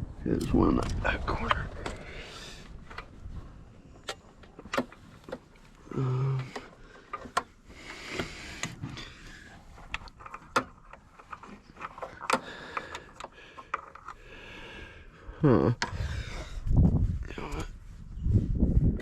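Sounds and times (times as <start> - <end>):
person grunting: 5.9 - 6.5.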